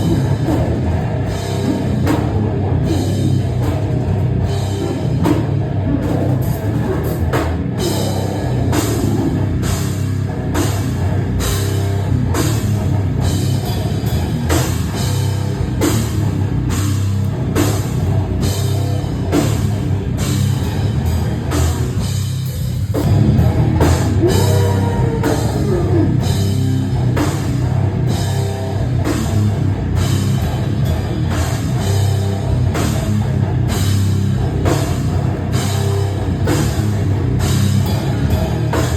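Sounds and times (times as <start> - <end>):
punk band playing loud: 0.0 - 38.9.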